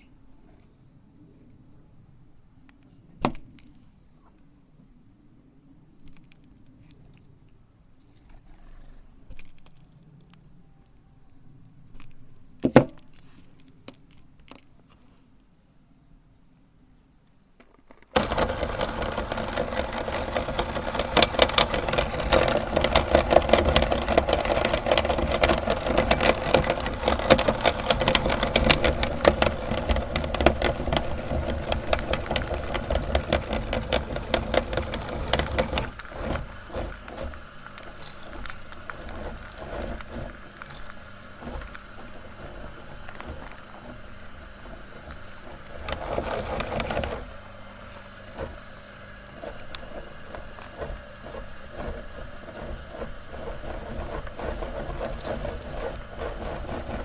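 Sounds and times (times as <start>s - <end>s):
crackling of ground material: 5.9s - 15.6s, 17.2s - 57.0s
meat grinder motor humming: 18.2s - 57.0s.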